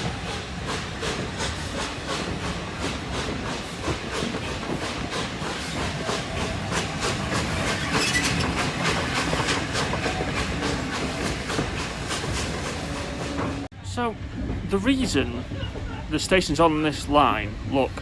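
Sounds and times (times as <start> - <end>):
steam hissing: 0.0 - 13.7
train coach clattering on rails: 0.0 - 18.0.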